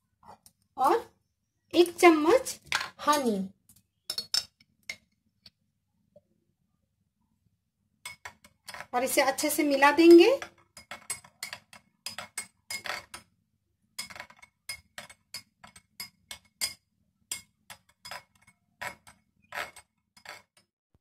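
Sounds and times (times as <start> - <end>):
spoon clinking in a teacup: 14.0 - 20.4.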